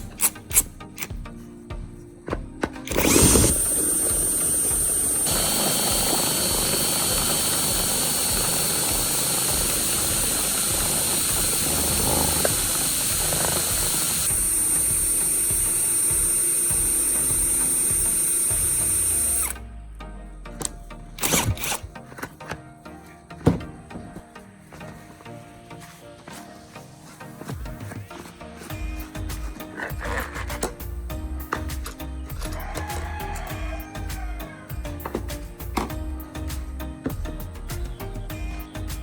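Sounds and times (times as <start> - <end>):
power drill whining: 2.6 - 19.6, 20.6 - 22.4.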